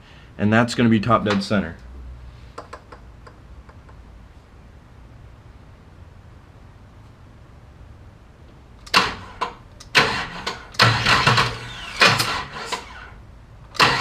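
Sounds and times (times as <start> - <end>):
engine starter motor cranking: 8.8 - 14.0.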